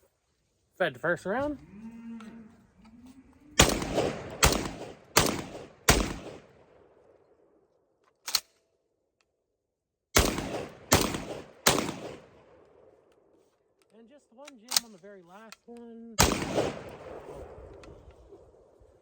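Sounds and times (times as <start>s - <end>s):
shotgun shots ringing: 3.6s - 6.8s, 10.2s - 12.6s, 16.2s - 17.8s.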